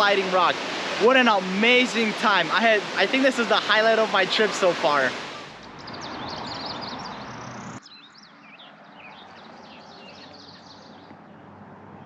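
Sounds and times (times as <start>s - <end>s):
flowing water rushing: 0.0s - 5.6s
small birds chirping: 5.1s - 11.2s.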